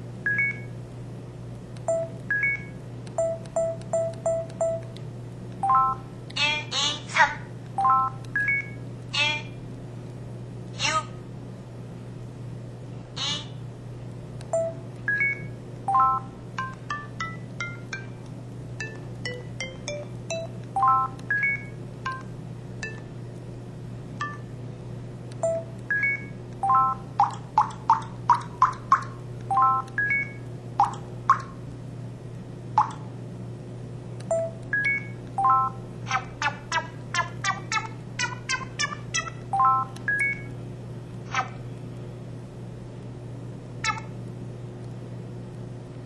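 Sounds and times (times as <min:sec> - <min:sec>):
phone electronic beeps and tones: 0:05.6 - 0:06.0, 0:14.6 - 0:17.0, 0:19.8 - 0:22.2.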